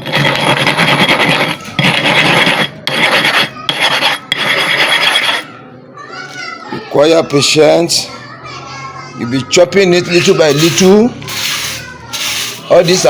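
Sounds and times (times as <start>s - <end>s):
sharpening stone rasping: 0.0s - 5.6s, 10.1s - 13.0s.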